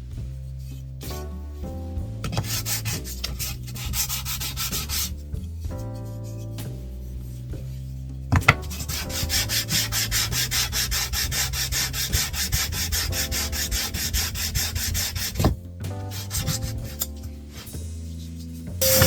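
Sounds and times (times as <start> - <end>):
sandpaper rubbing on wood: 2.4 - 5.2, 8.7 - 15.5, 16.1 - 17.0.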